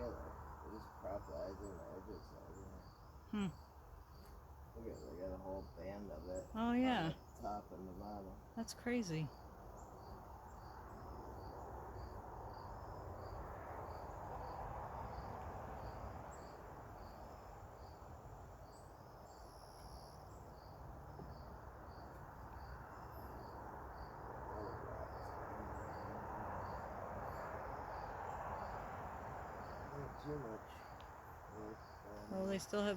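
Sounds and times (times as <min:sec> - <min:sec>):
cricket chirping: 0:00.0 - 0:32.9.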